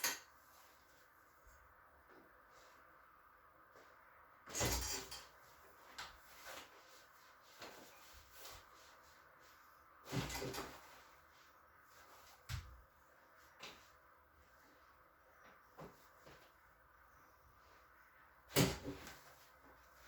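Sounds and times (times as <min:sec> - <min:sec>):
handling knocks and rustles: 0:03.8 - 0:12.9.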